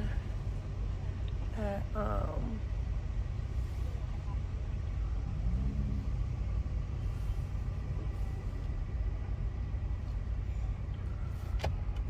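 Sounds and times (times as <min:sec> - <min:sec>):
car engine rumbling inside cabin: 0:00.0 - 0:12.0.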